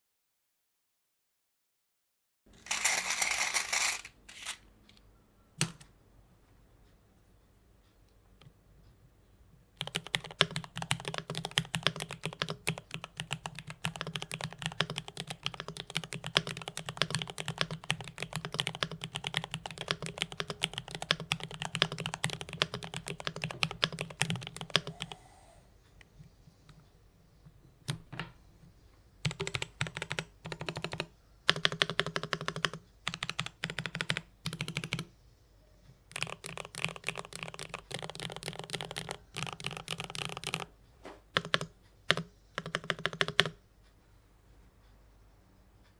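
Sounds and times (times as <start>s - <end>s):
mechanical keyboard typing: 2.6s - 4.6s, 9.8s - 25.2s, 29.2s - 35.1s, 36.1s - 40.7s, 41.3s - 43.6s.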